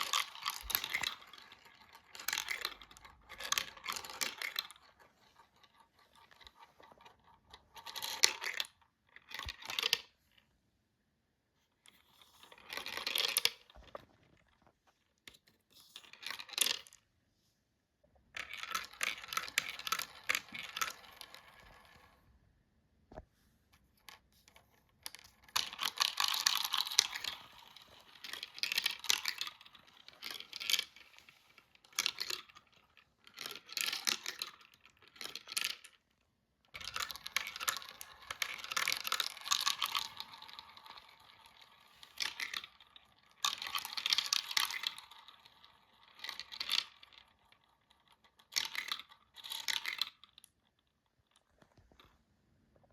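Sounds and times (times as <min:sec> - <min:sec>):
marbles clattering down a track: 0:00.0 - 0:10.0, 0:18.4 - 0:22.1, 0:25.0 - 0:36.0, 0:36.8 - 0:50.4.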